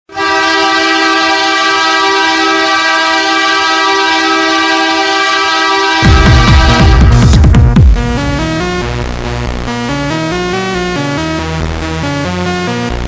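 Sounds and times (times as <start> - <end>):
goal horn: 0.1 - 9.0
electronic music with heavy beat: 5.7 - 13.0.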